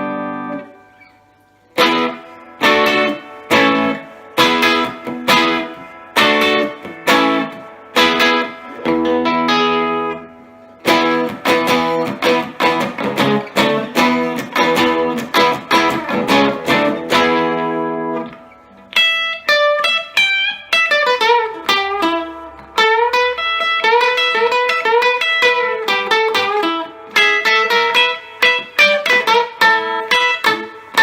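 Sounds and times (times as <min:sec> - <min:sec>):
electric guitar single-note phrases: 0:00.0 - 0:31.0
electric guitar strummed chords: 0:00.0 - 0:31.0.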